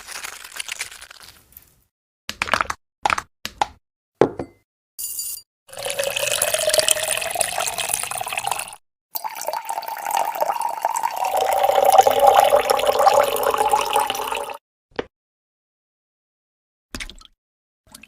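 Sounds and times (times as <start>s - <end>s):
liquid pouring into a glass: 5.7s - 14.6s.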